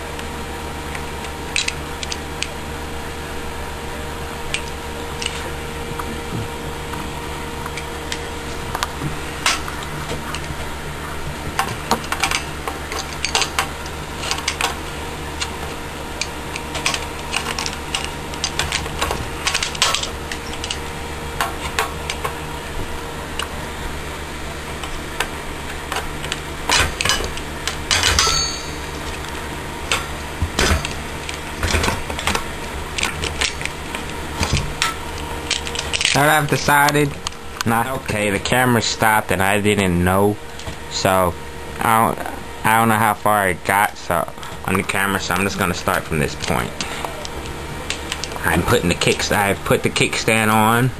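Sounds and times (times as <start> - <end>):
steady low hum: 0.0 - 50.9.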